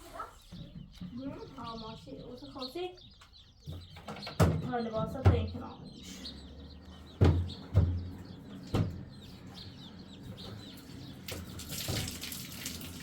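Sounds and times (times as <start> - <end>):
chickens clucking: 0.0 - 11.6
sharp knocks: 7.2 - 9.1.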